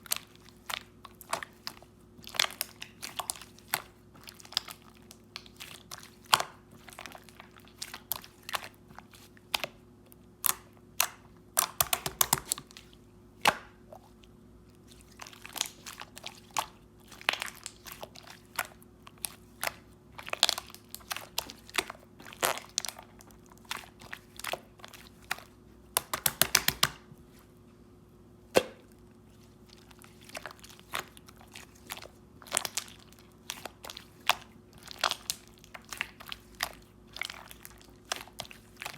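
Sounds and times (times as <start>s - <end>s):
slime squished by hand: 0.0s - 27.4s, 28.5s - 38.9s
wet clicks and pops: 10.4s - 12.7s, 25.9s - 27.0s.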